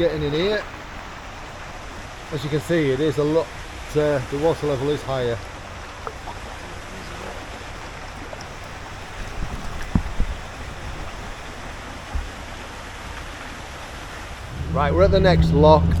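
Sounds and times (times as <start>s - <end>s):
moving water: 0.0s - 16.0s
low thumps: 14.4s - 16.0s.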